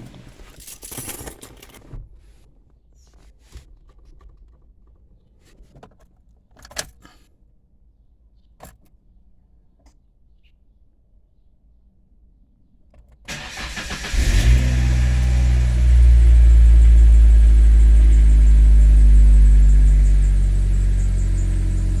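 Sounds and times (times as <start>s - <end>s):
car engine running: 13.3s - 22.0s.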